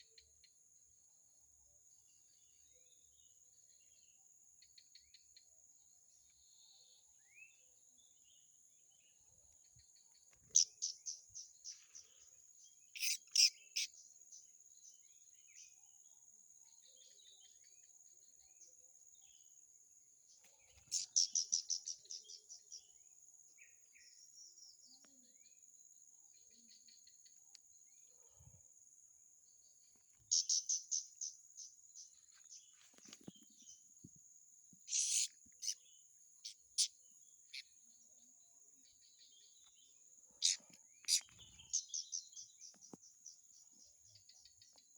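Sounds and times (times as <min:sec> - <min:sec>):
songbird calling: 0:06.2 - 0:15.9, 0:20.3 - 0:25.6, 0:29.5 - 0:44.9
high-pitched cricket-like trill: 0:34.9 - 0:37.7.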